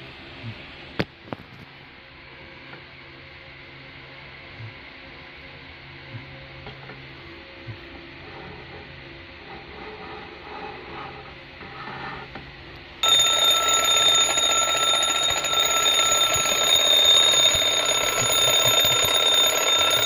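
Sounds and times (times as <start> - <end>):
twin-bell alarm clock ringing: 13.0 - 20.0.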